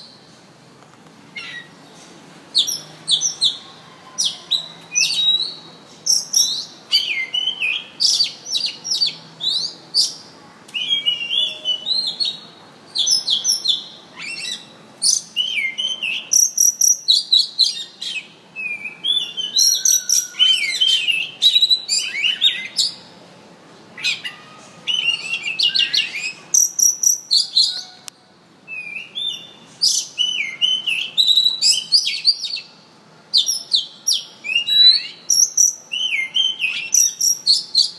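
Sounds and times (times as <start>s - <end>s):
songbird singing: 1.3s - 23.2s, 23.8s - 37.9s.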